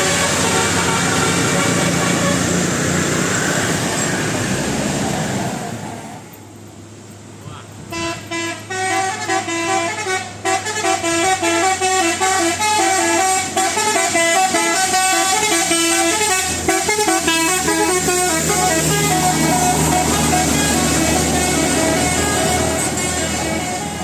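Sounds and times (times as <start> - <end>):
bus multi-tone air horn melody: 0.0 - 3.0, 7.9 - 24.0.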